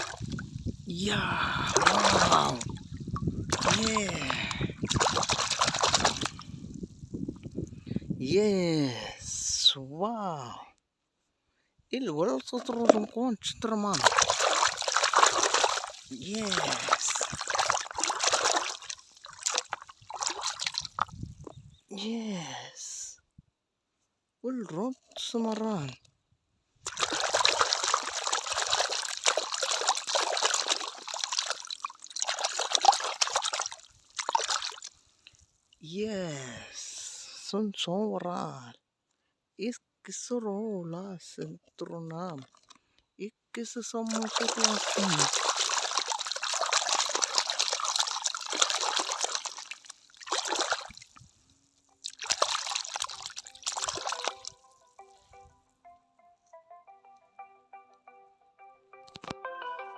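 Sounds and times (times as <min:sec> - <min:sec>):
water trickling over plastic toys: 0:00.0 - 0:06.4, 0:13.9 - 0:21.3, 0:26.9 - 0:35.8, 0:41.6 - 0:43.0, 0:44.1 - 0:54.6
light tune: 0:54.1 - 0:59.9.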